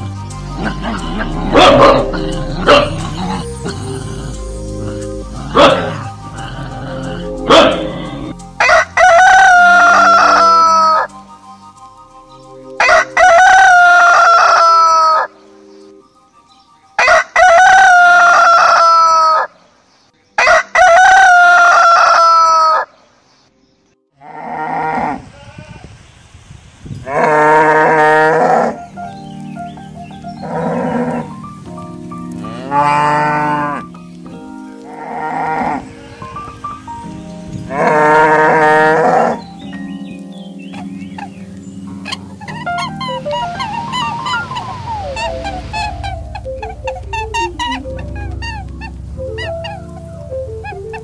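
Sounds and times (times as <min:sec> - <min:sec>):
deep animal call: 0:00.5 - 0:08.5, 0:37.7 - 0:39.5, 0:41.9 - 0:51.0
rooster crowing: 0:08.6 - 0:11.1, 0:12.8 - 0:15.3, 0:17.0 - 0:19.5, 0:20.4 - 0:22.9.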